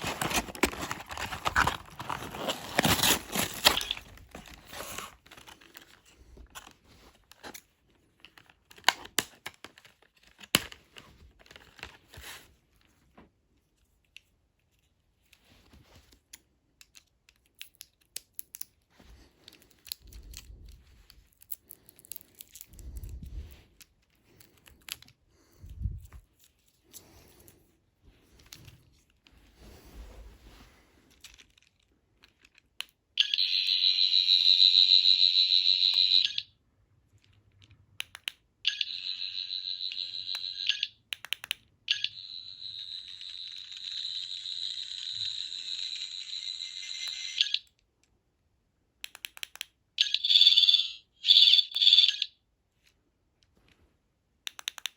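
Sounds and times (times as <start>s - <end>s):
packaging rustling and crinkling: 0.0s - 12.6s
toy electronic effect: 33.2s - 36.5s, 38.7s - 41.0s, 41.9s - 47.7s.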